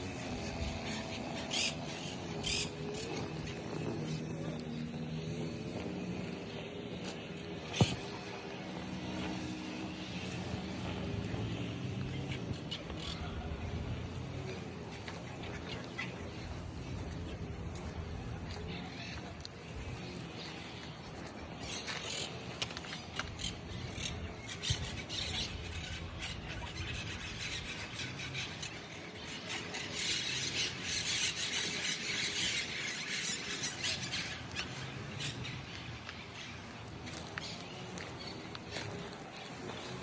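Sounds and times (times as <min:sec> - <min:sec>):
birds calling and chattering: 0:00.0 - 0:40.0.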